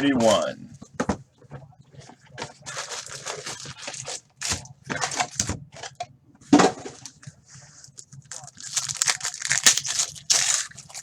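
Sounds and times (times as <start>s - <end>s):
wrapper and cardboard crinkling: 8.3s - 11.0s.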